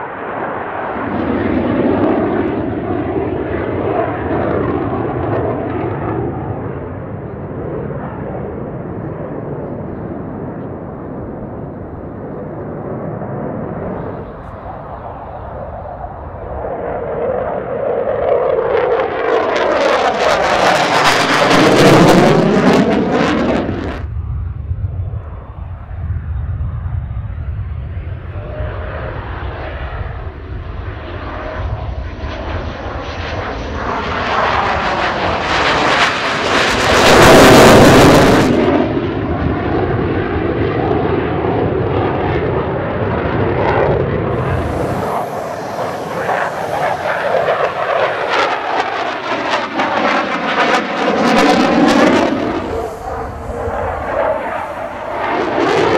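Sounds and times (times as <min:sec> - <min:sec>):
jet flying past: 0:00.0 - 0:55.9.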